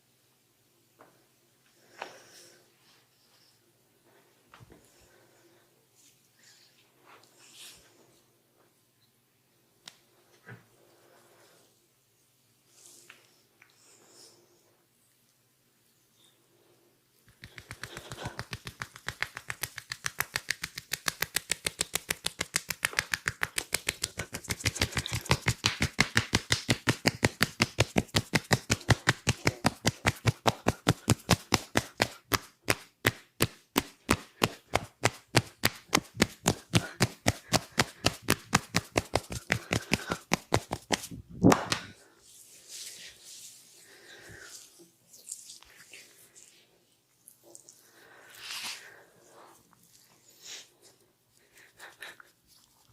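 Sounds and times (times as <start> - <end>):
hands slapping body: 17.2 - 42.0.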